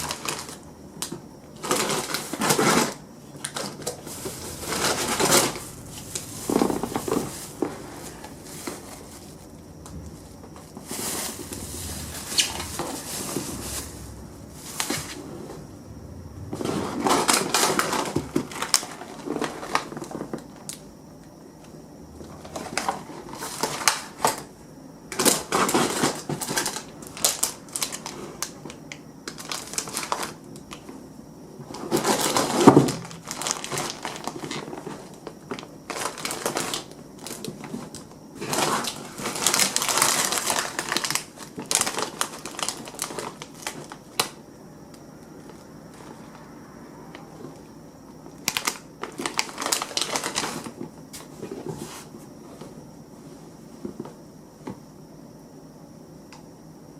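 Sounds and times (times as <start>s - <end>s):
crinkling and rustling: 0.0s - 15.7s, 31.7s - 44.4s, 48.4s - 52.8s.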